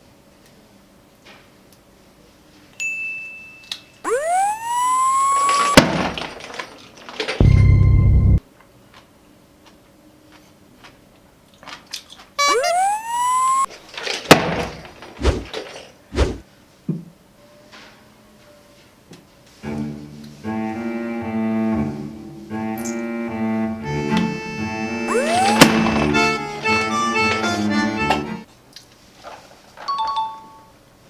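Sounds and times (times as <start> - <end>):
short rising tone: 4.1 - 5.8, 12.4 - 13.7, 25.1 - 25.9.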